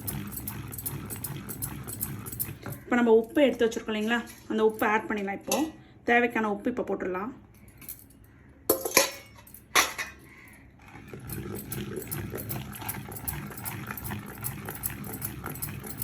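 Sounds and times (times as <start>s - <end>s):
spoon scraping and stirring in pot: 0.0s - 4.8s.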